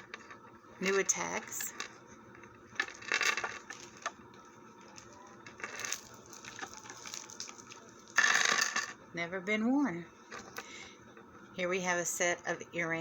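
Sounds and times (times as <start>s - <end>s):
packaging crinkling: 2.8s - 8.3s.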